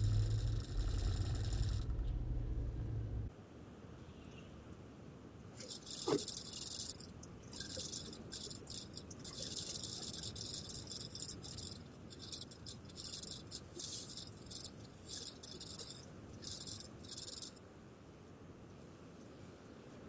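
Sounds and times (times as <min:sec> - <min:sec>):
high-pitched cabin rattling: 0:00.0 - 0:03.3
low rumble: 0:00.0 - 0:03.3.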